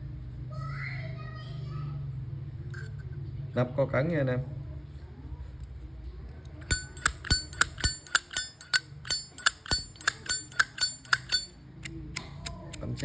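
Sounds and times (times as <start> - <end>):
lighter lid clicking open and shut: 6.7 - 13.0.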